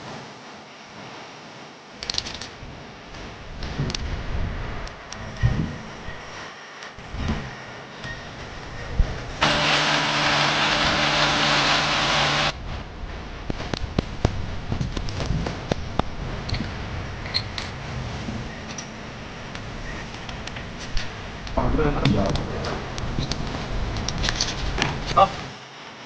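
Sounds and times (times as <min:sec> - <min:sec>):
power tool motor running: 0:09.4 - 0:12.6.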